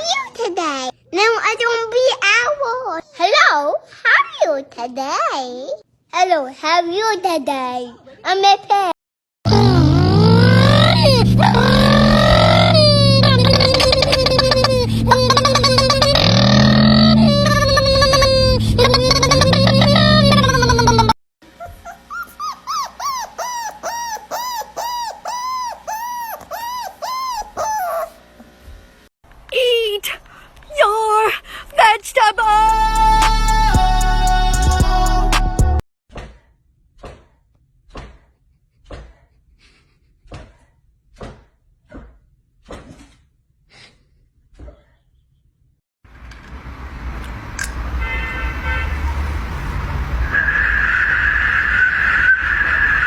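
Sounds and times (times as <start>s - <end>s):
loud pitched sound: 9.5s - 14.6s
dog whining yelps: 10.4s - 20.6s, 21.5s - 28.2s.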